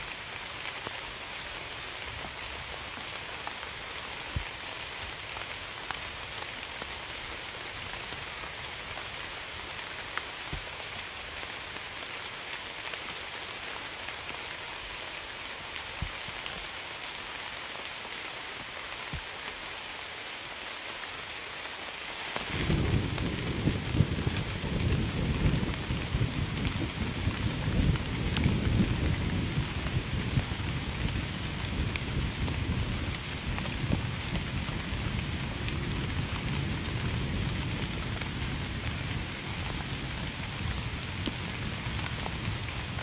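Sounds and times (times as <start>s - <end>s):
steady rain falling: 0.0s - 43.0s
thunder rumble: 22.5s - 33.0s.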